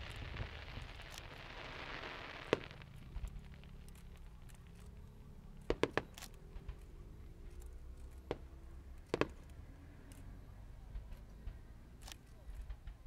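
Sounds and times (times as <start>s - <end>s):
fireworks bangs: 0.0s - 9.8s
low rumble: 0.0s - 11.8s.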